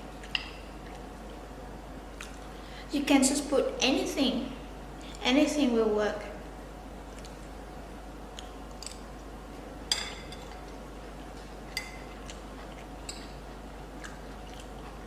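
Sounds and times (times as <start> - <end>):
cutlery clinking against dishes: 9.9 - 10.5.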